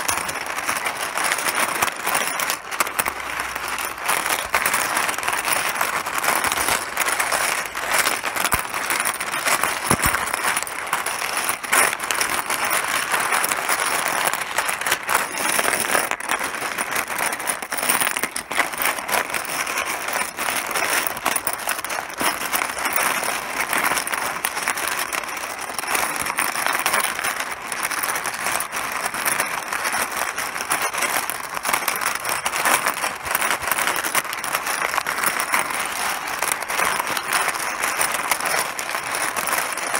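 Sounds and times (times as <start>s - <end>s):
mahjong tiles clattering: 0.0s - 39.9s.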